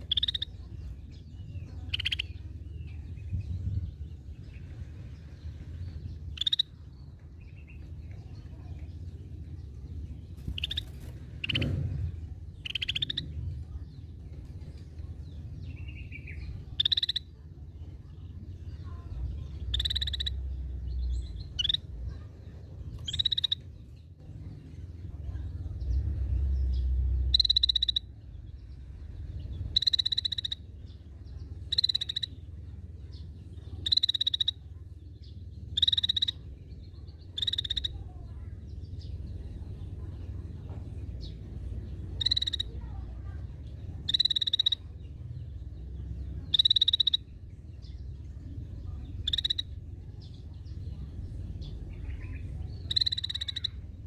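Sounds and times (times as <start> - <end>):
bird giving buzzy calls: 0.0 - 0.7, 1.7 - 2.5, 6.3 - 6.8, 10.4 - 12.0, 12.6 - 13.3, 16.2 - 17.4, 19.6 - 22.2, 23.0 - 23.7, 26.7 - 28.2, 29.7 - 30.8, 31.6 - 32.5, 33.8 - 34.7, 35.7 - 36.5, 37.3 - 38.1, 42.1 - 43.1, 44.0 - 45.0, 46.4 - 47.4, 49.2 - 49.8, 51.6 - 54.0.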